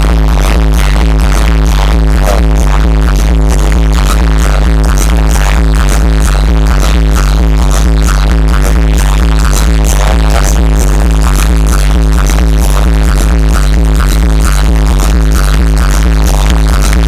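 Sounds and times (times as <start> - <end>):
electronic dance music: 0.0 - 17.0.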